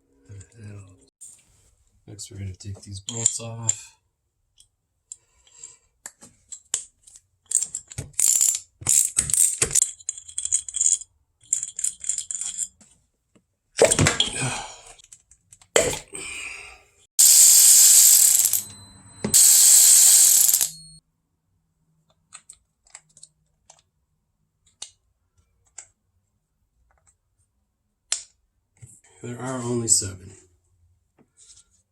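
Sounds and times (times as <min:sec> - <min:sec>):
wrench ratcheting and clinking: 0:07.4 - 0:12.7, 0:17.2 - 0:21.0
loud buzzing bursts: 0:17.2 - 0:18.6, 0:19.3 - 0:20.8.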